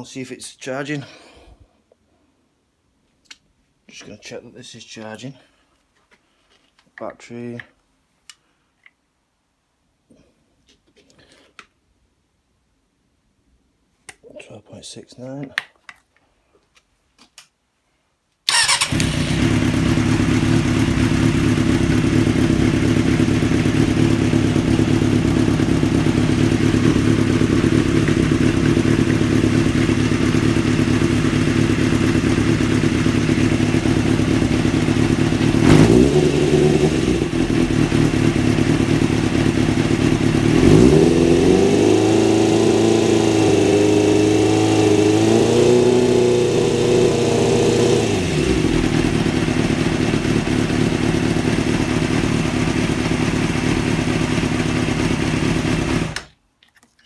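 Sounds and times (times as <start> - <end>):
motorcycle engine starting and revving: 18.5 - 56.3.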